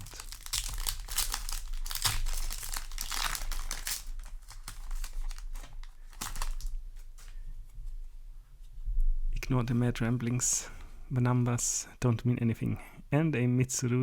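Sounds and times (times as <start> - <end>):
foil wrapper crinkling: 0.0 - 7.4.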